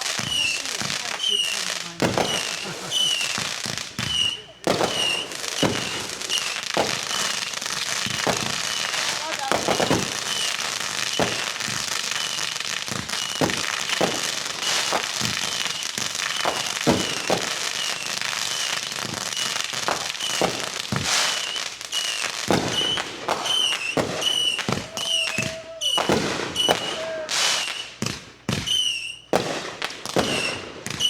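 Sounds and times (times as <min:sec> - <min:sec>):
fireworks bangs: 0:00.0 - 0:31.0
fireworks crackle: 0:00.0 - 0:31.0.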